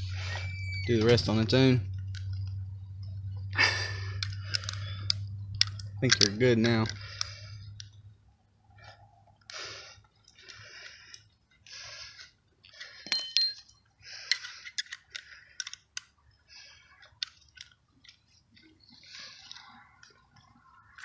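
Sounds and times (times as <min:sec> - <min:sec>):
metallic ring: 0:12.8 - 0:13.9.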